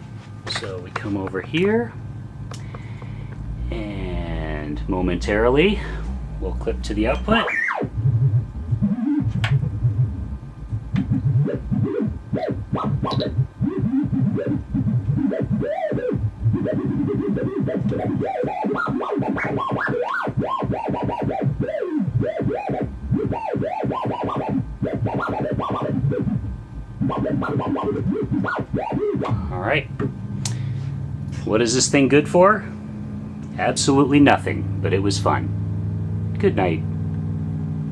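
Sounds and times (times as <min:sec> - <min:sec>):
steady low drone: 0:01.4 - 0:37.9
buzzy synthesizer tones swooping: 0:01.7 - 0:37.9.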